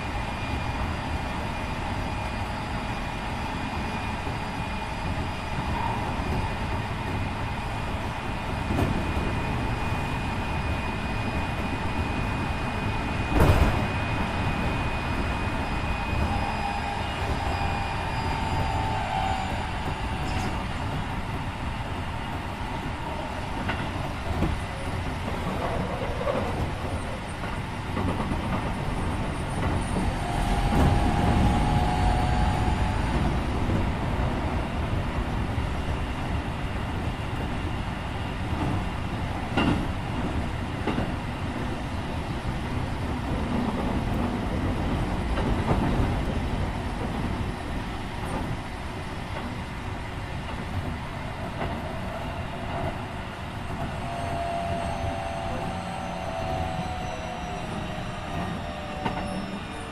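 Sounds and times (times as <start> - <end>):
train low rumble: 0.0 - 59.9.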